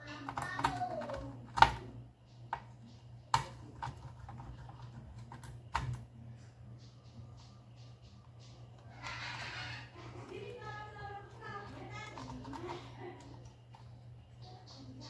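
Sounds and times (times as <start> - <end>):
laptop parts clicking and knocking: 0.2 - 1.8, 2.4 - 6.1.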